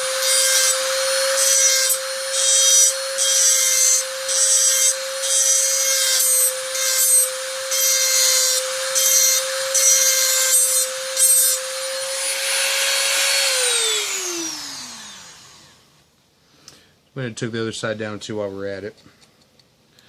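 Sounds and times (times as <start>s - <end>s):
rotary tool whining: 0.0s - 16.0s.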